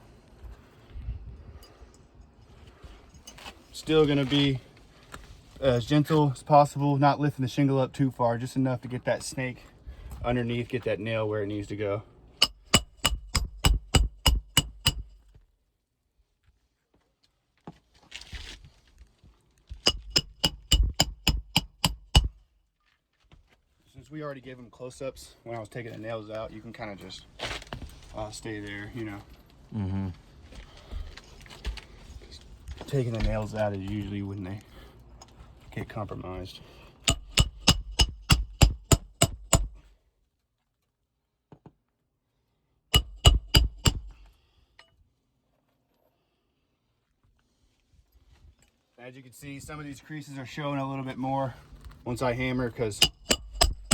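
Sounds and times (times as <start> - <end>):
hammer ringing on metal: 12.4 - 15.1, 19.9 - 22.3, 37.1 - 39.7, 43.0 - 44.2, 53.0 - 53.9.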